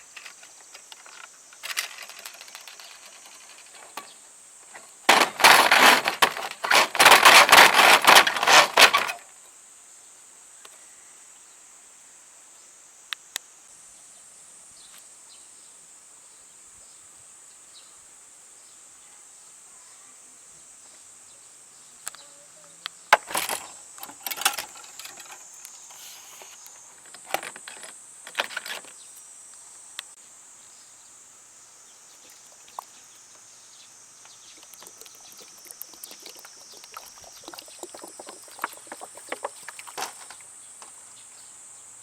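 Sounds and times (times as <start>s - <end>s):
insects chirring: 0.0s - 42.0s
knocks and scraping: 4.7s - 9.2s, 23.1s - 29.0s, 34.6s - 41.0s.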